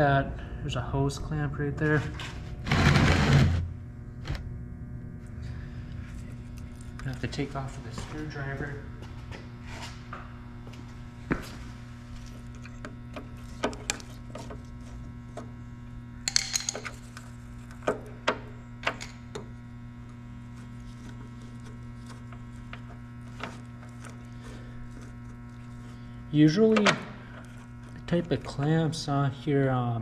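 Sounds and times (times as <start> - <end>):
low electrical hum: 0.0 - 30.0.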